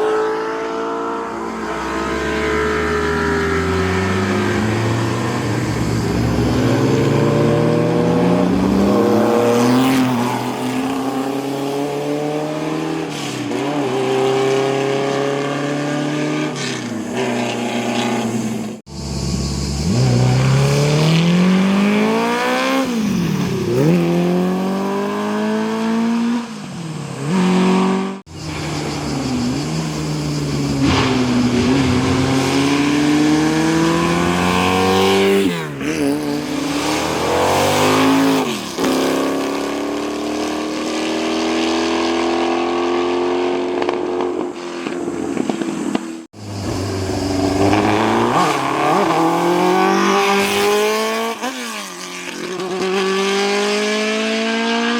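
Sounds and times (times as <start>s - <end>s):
racing car engines accelerating: 0.0s - 54.9s.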